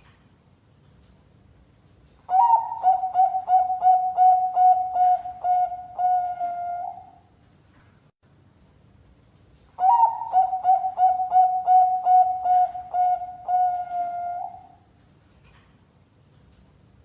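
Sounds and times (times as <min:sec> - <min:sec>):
dove cooing: 0:02.3 - 0:07.2, 0:09.8 - 0:14.8.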